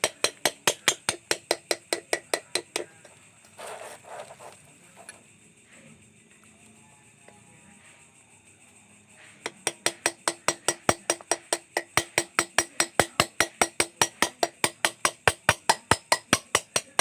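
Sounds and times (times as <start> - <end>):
hammer tapping steel chisel: 0.0 - 3.2, 9.4 - 17.0.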